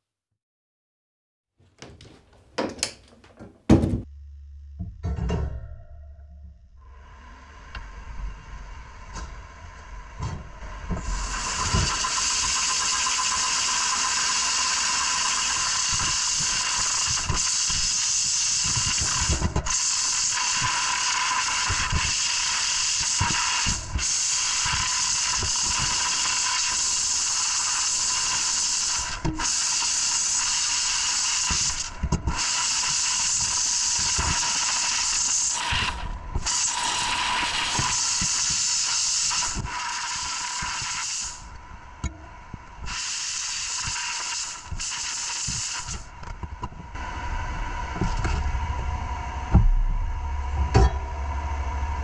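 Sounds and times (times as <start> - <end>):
knocks and clatters: 1.7 - 4.1
compressed air hissing: 11.0 - 41.6, 42.8 - 46.1.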